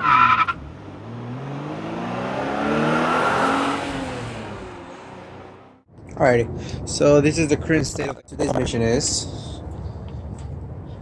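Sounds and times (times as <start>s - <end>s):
car engine revving: 0.0s - 5.9s.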